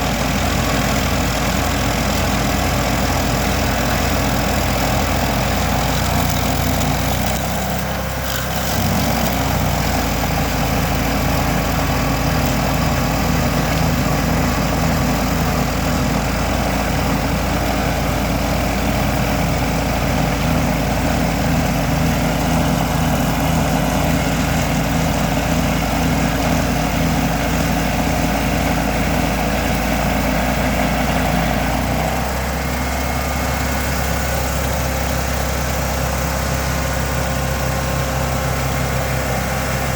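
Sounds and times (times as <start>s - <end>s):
cutter wheel grinding stump: 0.0s - 39.9s
stump grinder engine running: 0.0s - 39.9s.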